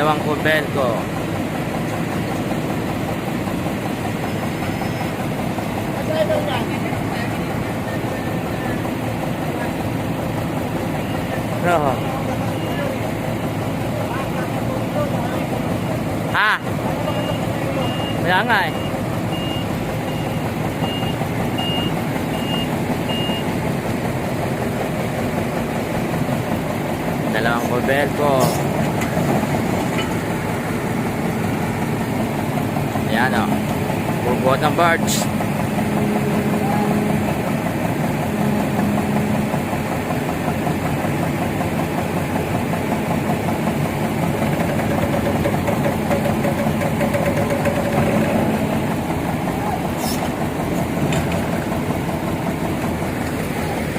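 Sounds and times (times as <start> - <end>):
diesel engine running: 0.0 - 53.9
backup alarm beeping: 17.1 - 23.5.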